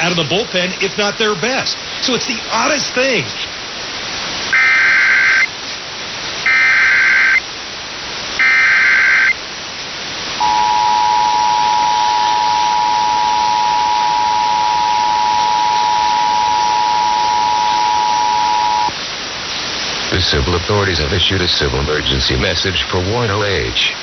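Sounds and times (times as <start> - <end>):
constant hiss: 0.0 - 24.0
data bursts: 4.5 - 5.5, 6.5 - 7.4, 8.4 - 9.4, 10.4 - 18.9
two-tone attention signal: 8.4 - 9.4, 10.4 - 18.9.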